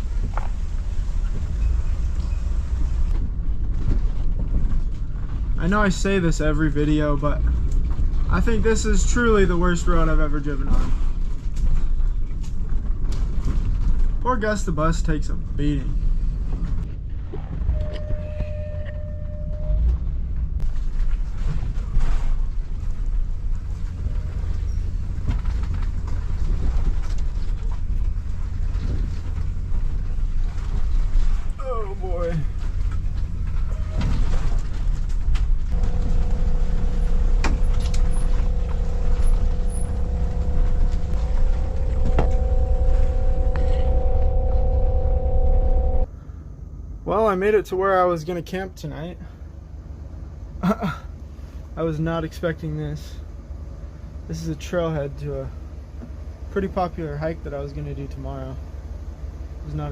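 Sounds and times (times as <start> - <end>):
steady whine: 0.0 - 12.9, 34.6 - 47.9
bus engine rumbling: 0.0 - 48.5
thin steady tone: 35.8 - 46.1.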